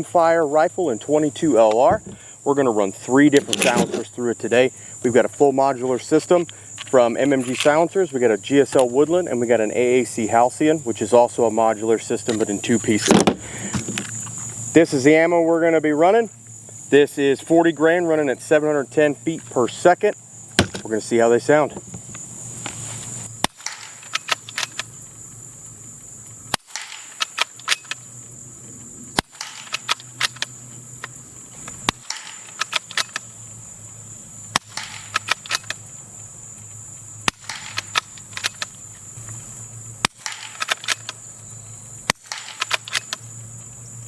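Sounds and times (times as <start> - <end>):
rifle bolt clicking: 40.0 - 41.2, 42.1 - 43.2.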